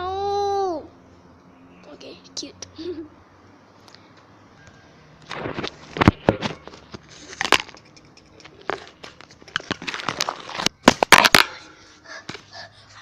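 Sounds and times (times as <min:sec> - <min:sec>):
phone being handled: 0:05.2 - 0:11.4
phone clattering on floor: 0:05.3 - 0:07.8.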